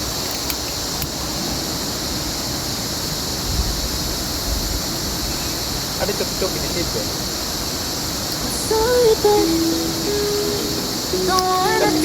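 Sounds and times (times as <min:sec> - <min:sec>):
small clicks: 0:11.3 - 0:11.8.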